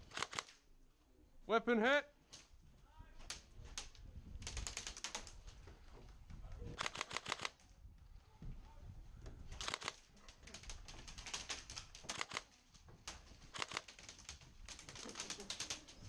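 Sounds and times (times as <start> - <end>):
airsoft rifle bursts of rapid clicks: 0.0 - 0.6, 6.8 - 7.6, 9.6 - 12.5, 13.5 - 16.0.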